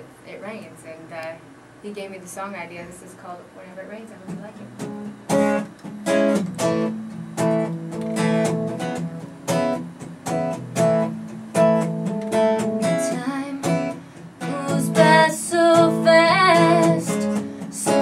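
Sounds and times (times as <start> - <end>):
acoustic guitar strumming: 3.9 - 18.0.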